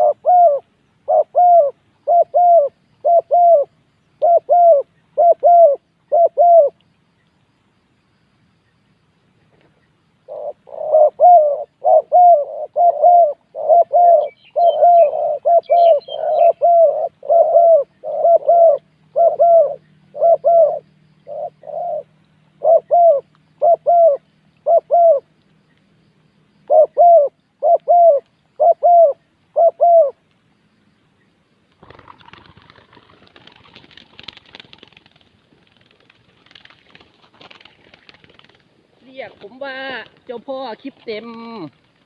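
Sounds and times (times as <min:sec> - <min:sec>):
dove cooing: 0:00.0 - 0:06.8, 0:10.2 - 0:25.3, 0:26.7 - 0:30.2
small bird twittering: 0:09.8 - 0:25.0.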